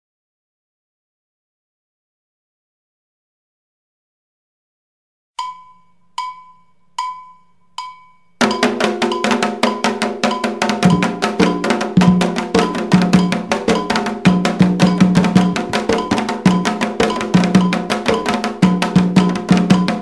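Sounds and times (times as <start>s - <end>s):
metal bell struck: 5.4s - 11.2s
fast drum rhythm: 8.4s - 20.0s.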